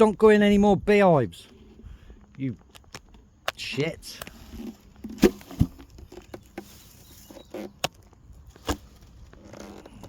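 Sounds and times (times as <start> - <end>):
scrabbling and rustling: 4.3 - 10.0.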